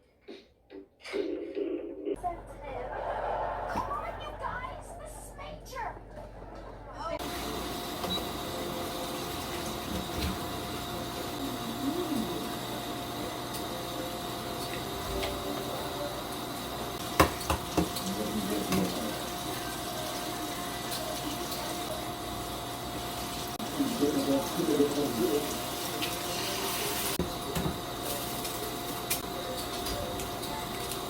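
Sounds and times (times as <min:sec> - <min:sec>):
machine hum: 0:01.6 - 0:17.2.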